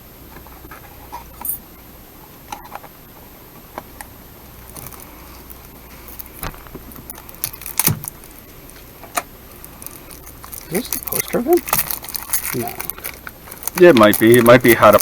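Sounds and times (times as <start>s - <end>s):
cards and packaging being handled: 4.7s - 8.8s, 9.5s - 15.0s.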